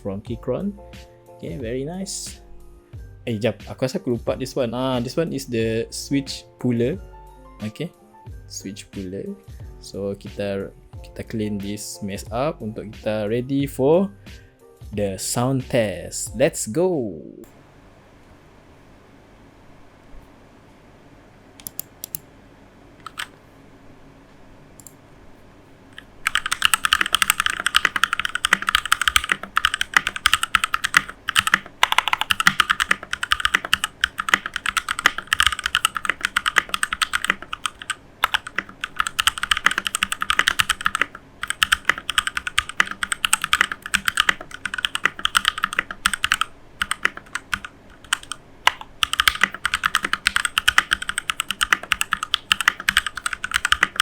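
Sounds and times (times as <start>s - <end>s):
mechanical keyboard typing: 21.6s - 22.2s, 23.0s - 23.3s, 26.0s - 54.0s.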